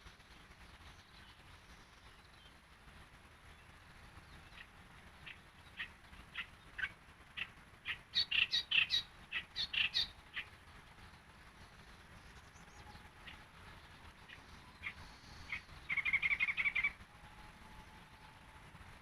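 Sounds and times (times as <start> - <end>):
bird singing: 3.4 - 18.6.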